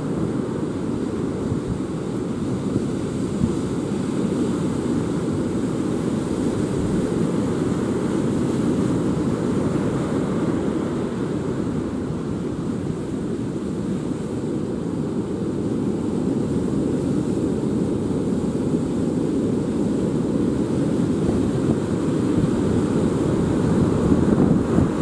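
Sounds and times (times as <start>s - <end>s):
strong wind buffeting microphone: 0.0s - 25.0s.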